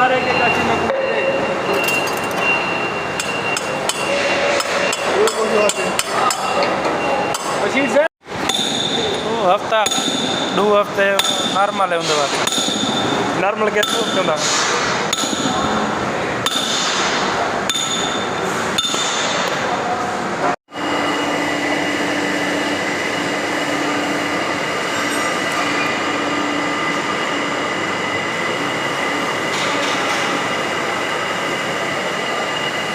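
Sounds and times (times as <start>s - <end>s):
metal knocks and clinks: 1.7s - 2.4s.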